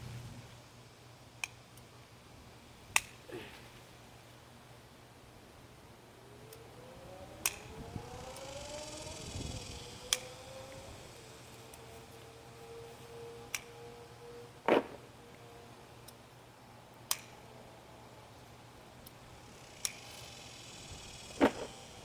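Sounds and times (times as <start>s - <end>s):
faint steady hum: 0.0s - 22.0s
bean pods snapping: 2.9s - 3.2s, 17.0s - 17.4s.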